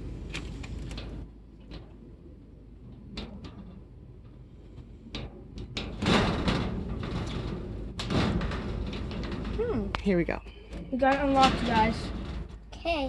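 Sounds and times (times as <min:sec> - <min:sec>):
lock and door rattling: 0:05.2 - 0:12.7.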